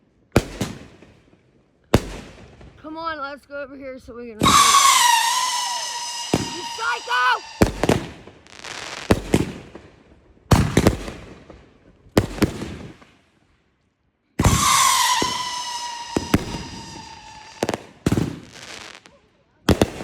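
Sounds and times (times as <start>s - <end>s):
firework bangs with crackling: 0.3s - 2.8s, 4.4s - 13.2s, 14.4s - 20.0s
firework shrill whistle: 4.4s - 9.1s, 14.4s - 17.8s.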